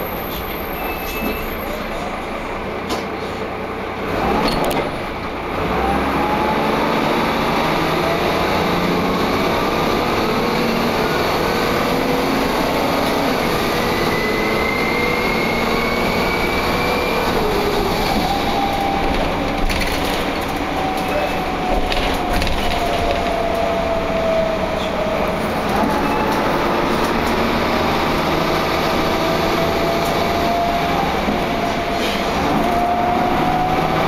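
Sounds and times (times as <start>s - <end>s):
bus engine and road drone: 0.0s - 34.0s
whining tones climbing in pitch: 6.1s - 19.7s.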